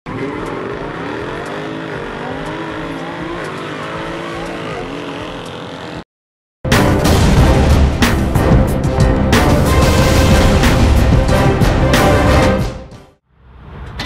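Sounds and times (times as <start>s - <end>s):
car engine accelerating: 0.1s - 6.0s.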